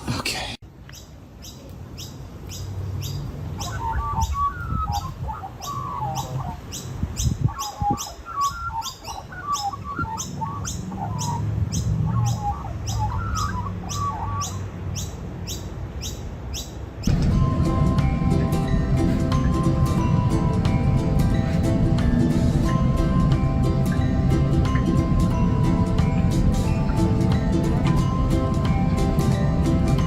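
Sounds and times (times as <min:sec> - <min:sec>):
bird chirping high: 0:00.9 - 0:30.0
bird warbling: 0:03.6 - 0:14.7.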